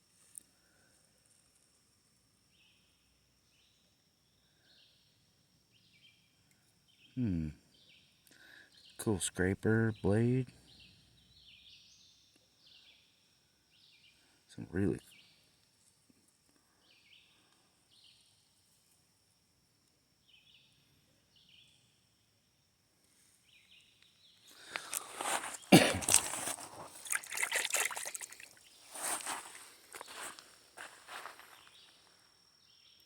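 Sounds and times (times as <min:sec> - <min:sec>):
splashing in shallow water: 0:24.7 - 0:29.6.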